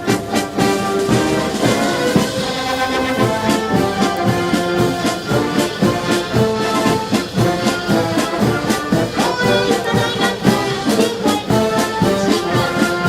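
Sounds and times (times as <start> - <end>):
brass band playing: 0.0 - 13.0.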